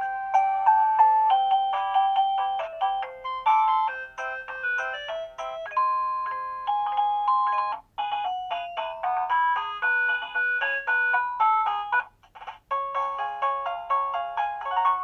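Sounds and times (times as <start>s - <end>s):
doorbell chime melodies: 0.0s - 12.0s.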